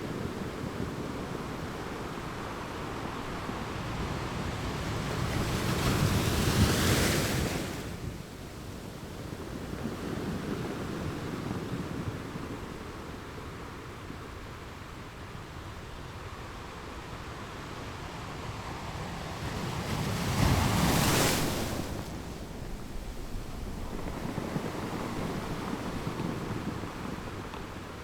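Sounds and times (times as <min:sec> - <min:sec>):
waves crashing on rocks: 0:19.5 - 0:28.0.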